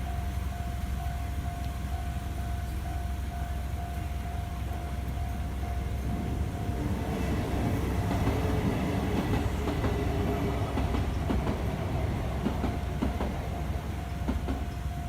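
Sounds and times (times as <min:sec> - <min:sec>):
crossing warning bell: 0:00.0 - 0:15.0
train wheels clacking on rail joints: 0:05.1 - 0:15.0.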